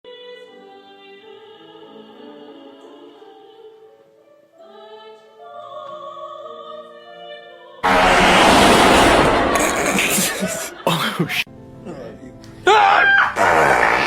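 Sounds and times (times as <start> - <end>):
operatic singing with music: 4.6 - 11.2.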